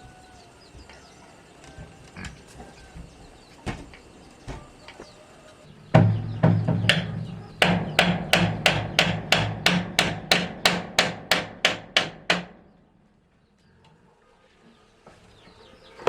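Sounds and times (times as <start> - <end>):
hammer striking: 5.9 - 12.7.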